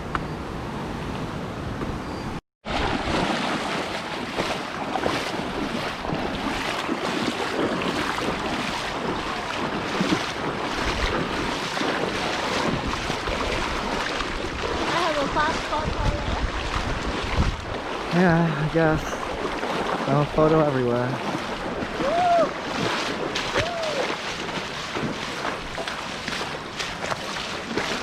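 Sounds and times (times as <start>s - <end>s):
river water flowing: 2.6s - 28.0s
wind buffeting microphone: 4.1s - 25.8s.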